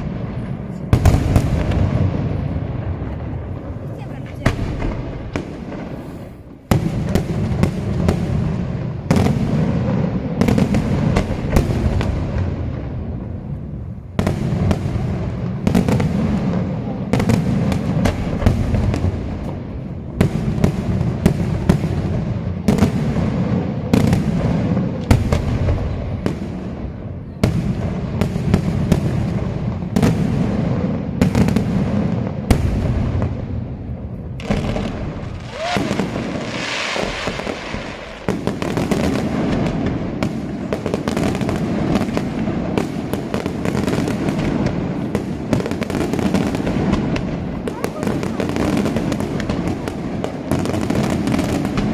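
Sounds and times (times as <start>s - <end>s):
rumbling echo: 0.0s - 20.2s.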